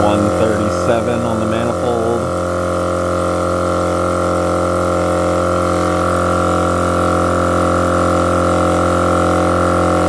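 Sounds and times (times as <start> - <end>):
air compressor droning hum: 0.0 - 10.0.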